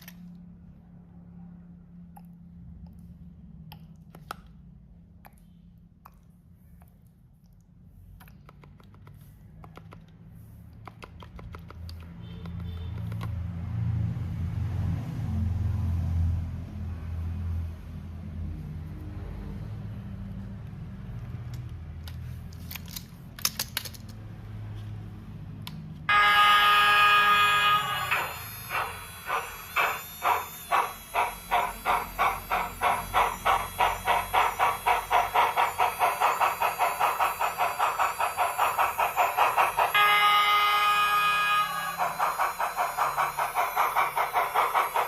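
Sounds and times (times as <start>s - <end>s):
steam exhaust chuffs: 26.1s - 45.0s
chime whistle blast: 39.9s - 44.2s.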